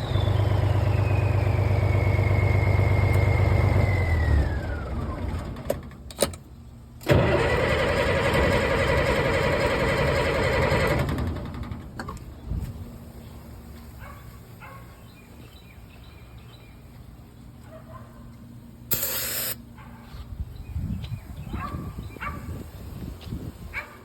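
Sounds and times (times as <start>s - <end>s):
dog barking: 14.0s - 15.0s, 17.6s - 18.3s, 19.8s - 20.1s, 21.5s - 22.5s, 23.7s - 24.0s
short spray hiss: 18.9s - 19.6s.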